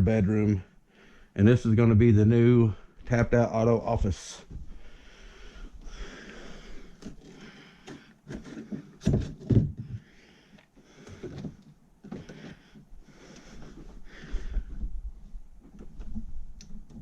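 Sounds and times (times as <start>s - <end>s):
breathing: 0.8s - 1.4s, 4.6s - 9.0s, 9.8s - 14.9s
rustling: 10.8s - 17.0s.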